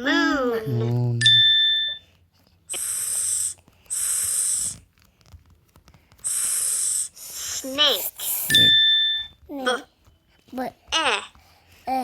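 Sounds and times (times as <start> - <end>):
person hissing s sound: 2.7 - 4.8, 6.2 - 8.7.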